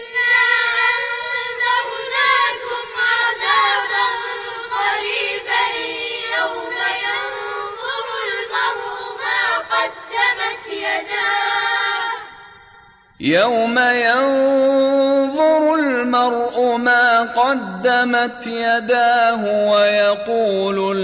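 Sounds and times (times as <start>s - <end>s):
child chanting melodically: 0.0s - 12.2s.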